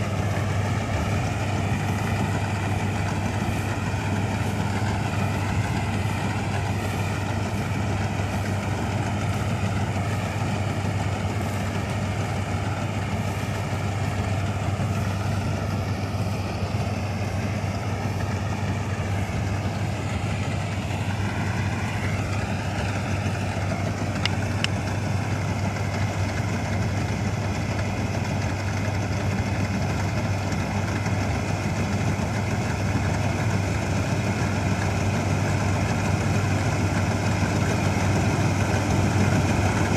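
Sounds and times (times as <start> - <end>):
combine harvester engine hum: 0.0 - 39.9.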